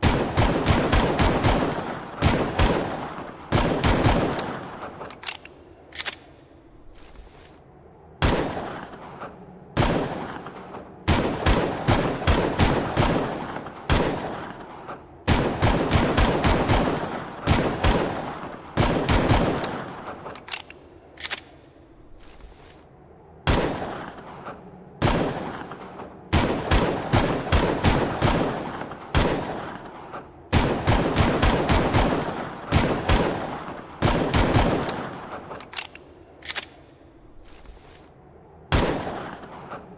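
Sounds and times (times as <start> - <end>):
pistol shots: 0.0 - 6.4, 23.5 - 37.6, 38.7 - 39.9.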